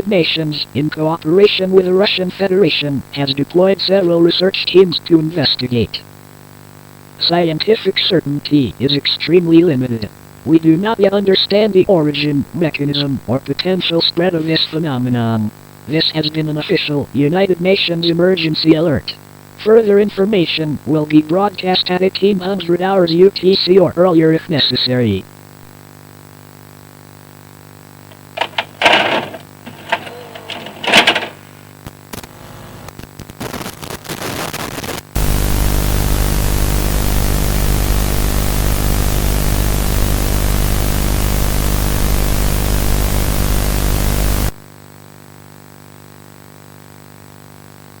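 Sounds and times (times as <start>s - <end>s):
faint electrical hum: 0.0s - 48.0s
loud static hiss: 0.0s - 48.0s
distorted bursts and crackles: 25.3s - 44.6s.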